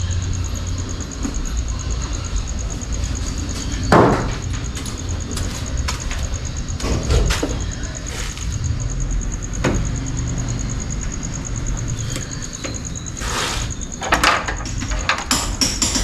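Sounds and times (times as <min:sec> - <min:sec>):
loud knock: 0:03.9 - 0:04.4.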